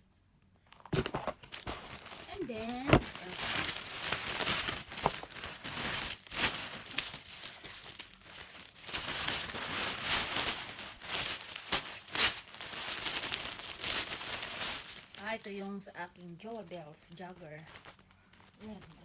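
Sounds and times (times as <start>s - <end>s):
packaging crinkling and rustling: 0.6s - 19.0s.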